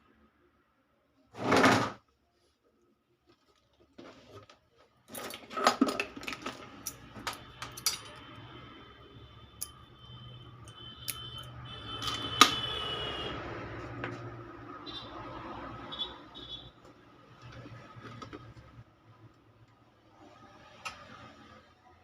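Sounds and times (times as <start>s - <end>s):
small metal tools clinking: 5.1s - 8.2s.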